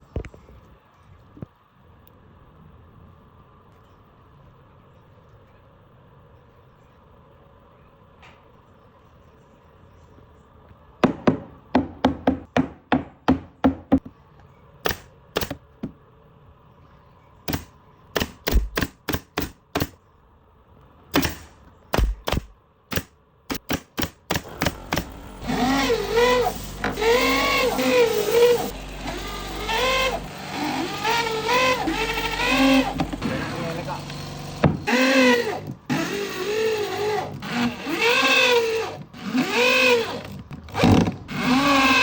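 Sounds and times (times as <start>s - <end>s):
knocks on wood: 11.0s - 14.1s.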